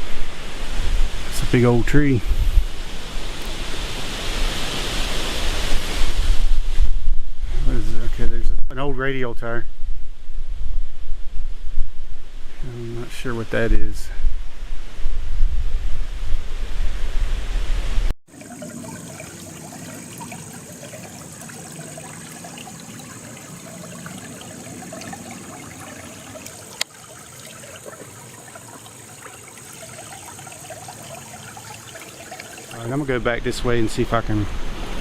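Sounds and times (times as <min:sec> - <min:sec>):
wind buffeting the microphone: 0:00.0 - 0:18.1
creek rushing: 0:18.3 - 0:35.0.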